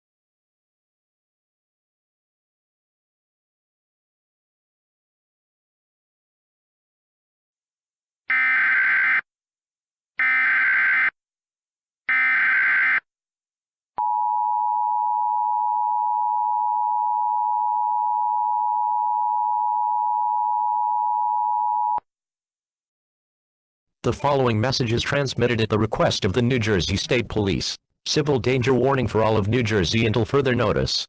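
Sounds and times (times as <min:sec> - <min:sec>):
steady single-pitch alarm tone: 0:08.3 - 0:09.2, 0:10.2 - 0:11.1, 0:12.1 - 0:13.0, 0:14.0 - 0:22.0.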